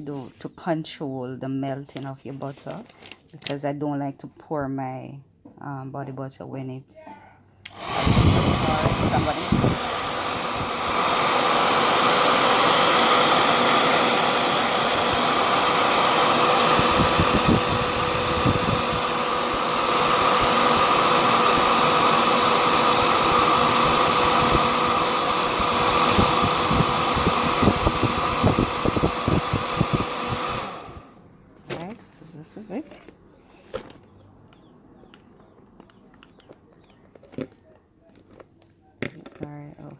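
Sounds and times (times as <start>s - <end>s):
blow dryer running: 7.7s - 31.2s.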